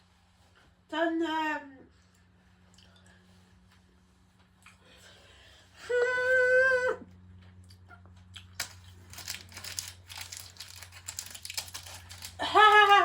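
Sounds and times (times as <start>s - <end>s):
crackling and rustling: 8.2s - 13.0s.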